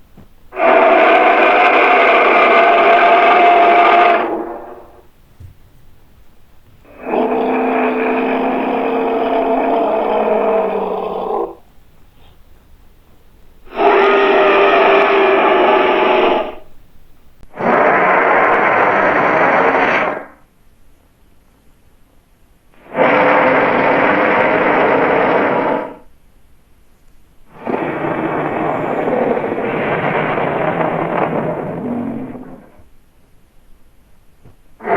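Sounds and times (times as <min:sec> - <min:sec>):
dinosaur roar: 0:00.5 - 0:05.1, 0:06.8 - 0:11.6, 0:13.6 - 0:16.7, 0:17.5 - 0:20.4, 0:22.8 - 0:26.0, 0:27.5 - 0:32.9.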